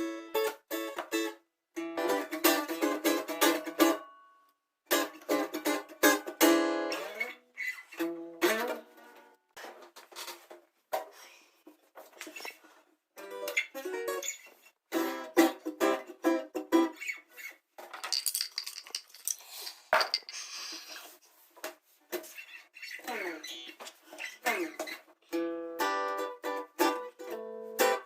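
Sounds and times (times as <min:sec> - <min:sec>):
guitar plucked notes: 0:25.3 - 0:28.0.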